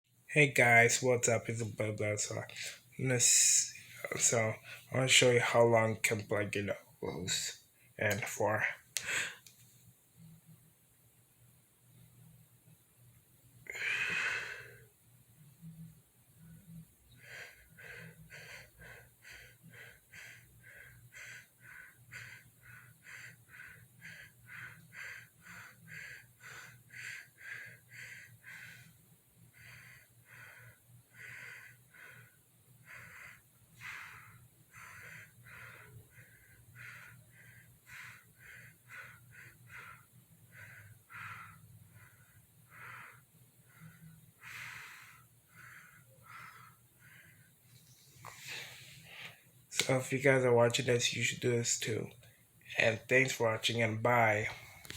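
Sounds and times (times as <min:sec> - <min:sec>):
faint breath puffs through nose: 0:16.7 - 0:49.5.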